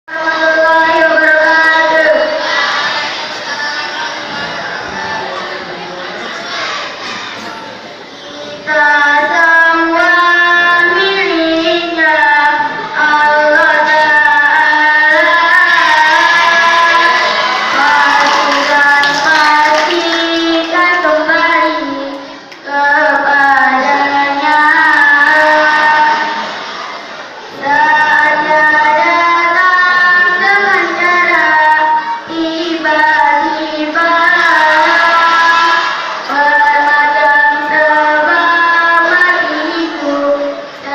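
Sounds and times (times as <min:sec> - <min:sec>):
child singing: 0:00.1 - 0:05.6, 0:06.2 - 0:40.9.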